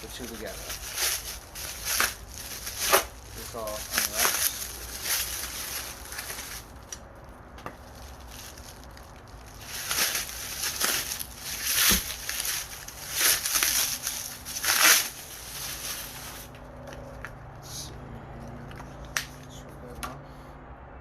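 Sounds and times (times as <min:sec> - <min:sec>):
packaging wrap crinkling and tearing: 0:00.0 - 0:06.9, 0:07.8 - 0:16.5.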